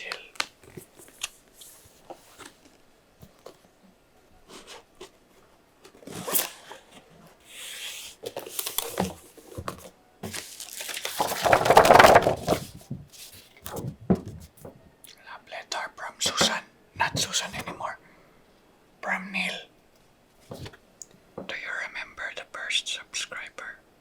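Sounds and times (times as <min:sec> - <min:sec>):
packaging clicks and rustles: 0:08.2 - 0:13.7
loud tearing of package: 0:10.3 - 0:12.6.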